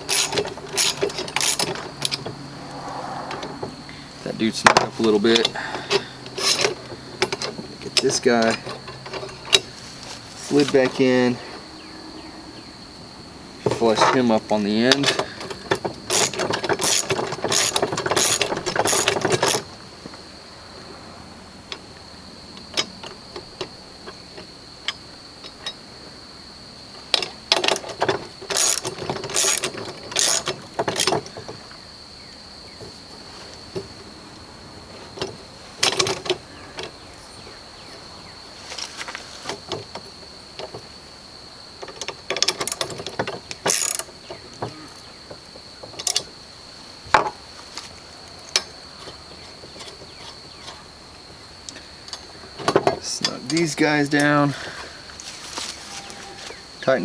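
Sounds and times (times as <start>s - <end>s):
ratchet wrench clicking: 0.0s - 2.2s, 16.0s - 19.6s, 28.5s - 31.2s, 43.6s - 44.1s.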